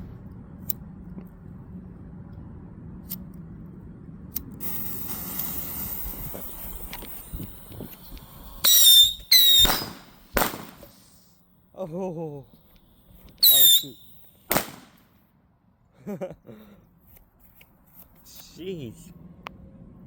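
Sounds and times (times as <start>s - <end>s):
firework crack: 4.4s - 11.4s, 12.5s - 15.3s
firework whistles: 4.6s - 11.4s, 12.6s - 15.1s
faint hiss: 4.6s - 15.1s.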